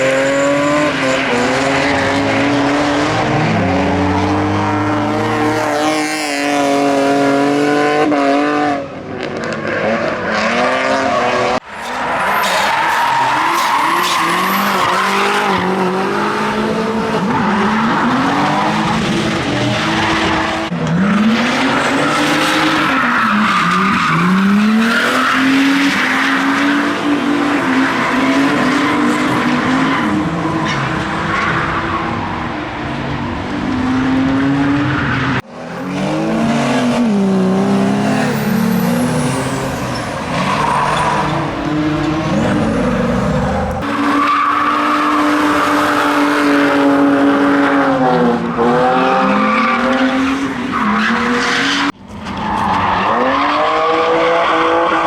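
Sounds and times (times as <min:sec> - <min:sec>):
car engines revving: 0:00.0 - 0:55.0
tyres screeching: 0:36.9 - 0:45.7.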